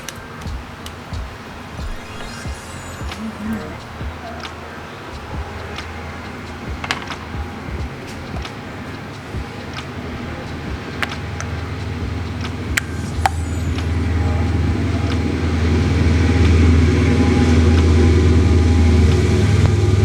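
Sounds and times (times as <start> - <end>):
sharp clicks: 1.8 - 4.6.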